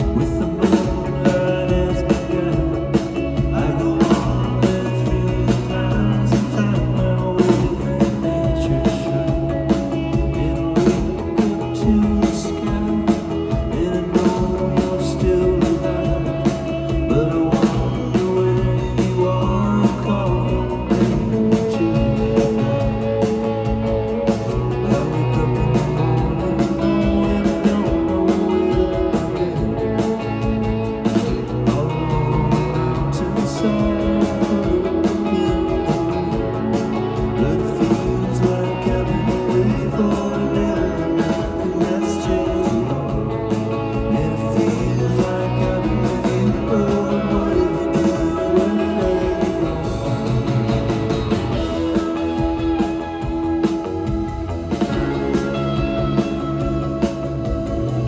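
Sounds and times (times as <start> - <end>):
live band playing folk-rock: 0.0 - 58.0
steady drum beat: 0.0 - 58.0.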